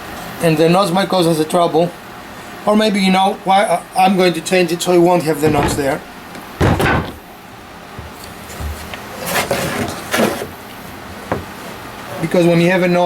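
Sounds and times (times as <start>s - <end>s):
wood rubbing and scraping: 5.4s - 7.2s
wooden boards knocking: 5.4s - 7.2s.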